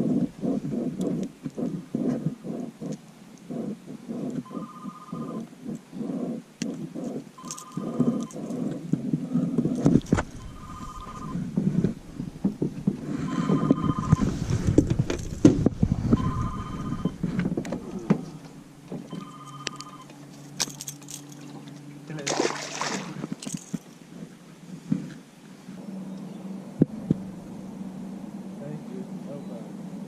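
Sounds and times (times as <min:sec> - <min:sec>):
phone ringing: 0:04.4 - 0:05.5, 0:07.4 - 0:08.4, 0:10.3 - 0:11.6, 0:13.0 - 0:14.4, 0:16.1 - 0:17.2, 0:19.1 - 0:20.2.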